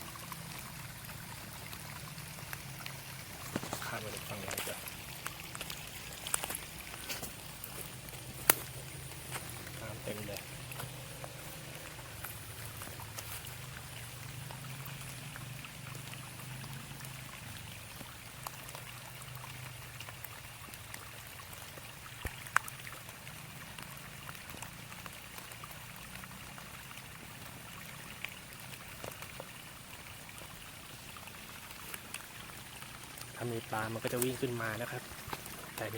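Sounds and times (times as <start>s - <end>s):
small splashes: 0.0s - 35.9s
water flowing through ditch: 0.0s - 35.9s.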